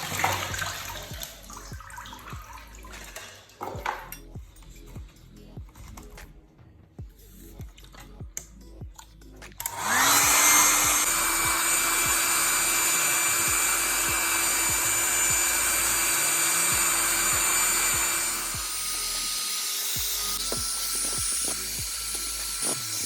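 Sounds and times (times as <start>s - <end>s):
background music with steady beat: 0.0s - 23.0s
electric air blower running: 9.6s - 23.0s.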